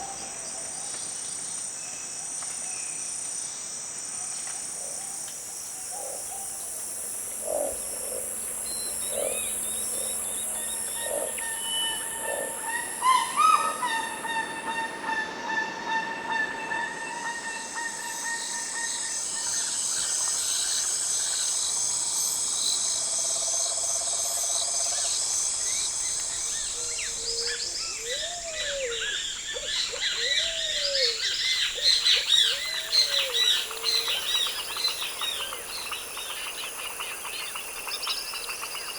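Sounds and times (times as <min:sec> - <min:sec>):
low insect tones: 0:00.0 - 0:15.0, 0:17.0 - 0:38.9
high-pitched insect drone: 0:05.4 - 0:14.9
birds calling: 0:07.2 - 0:15.8
chirps and whistled bird calls: 0:07.4 - 0:15.8, 0:25.6 - 0:38.9.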